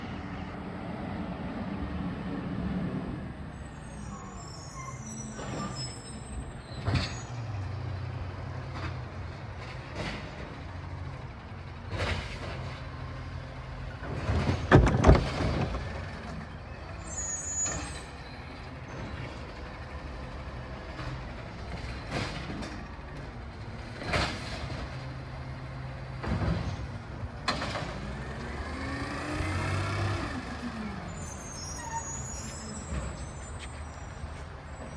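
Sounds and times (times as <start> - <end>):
diesel truck engine drone: 0.0 - 34.9
metal clanks and bangs: 14.3 - 16.4.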